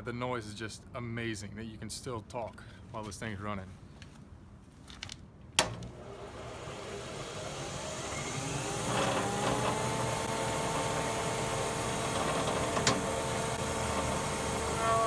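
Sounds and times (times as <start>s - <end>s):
thickness planer humming: 5.7s - 15.0s.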